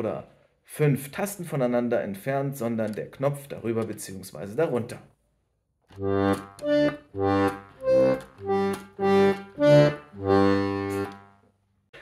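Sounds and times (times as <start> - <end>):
accordion bass notes and chords: 5.9 - 11.4.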